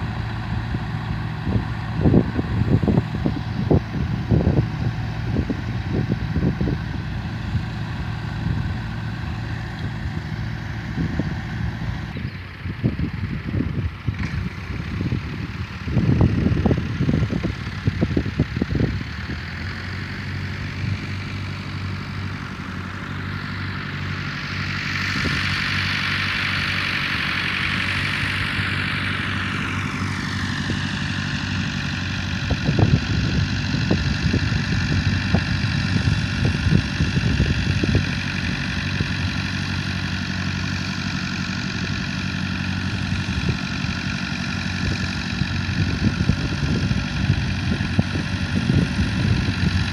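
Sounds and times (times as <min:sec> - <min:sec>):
wind buffeting microphone: 0:00.0 - 0:22.4, 0:25.0 - 0:49.9
tractor engine running: 0:00.0 - 0:49.9.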